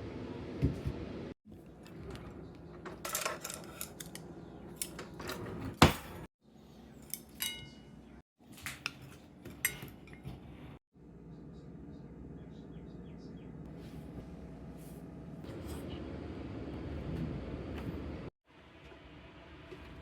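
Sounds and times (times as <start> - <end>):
cutlery and dishes clinking: 2.8 - 6.3, 7.0 - 7.9, 8.6 - 10.4.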